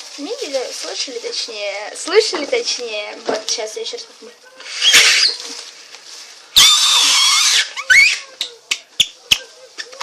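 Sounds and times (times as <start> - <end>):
plastic bag whistle squealing: 4.7 - 5.5, 6.5 - 8.3.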